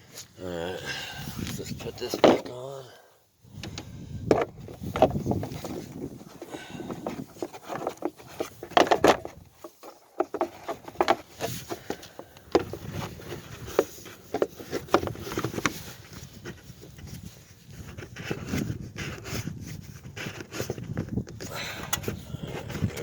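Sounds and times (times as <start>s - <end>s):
clicks and knocks of car parts: 7.0s - 12.8s.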